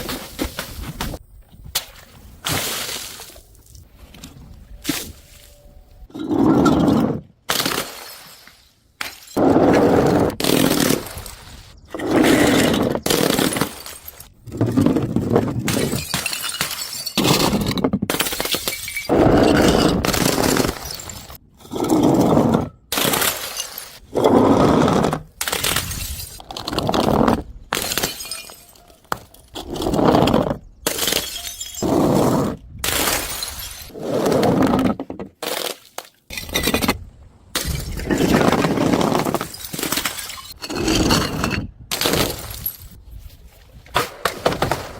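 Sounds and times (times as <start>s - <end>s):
glass bottles smashing: 12.6s - 14.3s, 15.7s - 21.4s, 23.0s - 24.0s, 27.7s - 28.9s, 30.9s - 31.9s, 32.9s - 33.9s, 39.3s - 43.0s.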